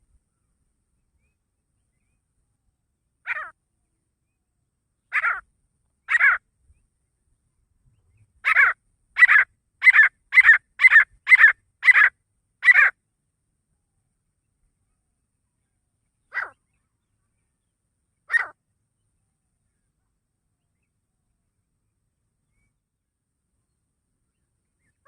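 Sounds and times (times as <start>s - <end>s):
francolin harsh calls: 3.2s - 3.6s, 5.1s - 6.4s, 8.4s - 13.0s, 16.3s - 16.7s, 18.2s - 18.6s.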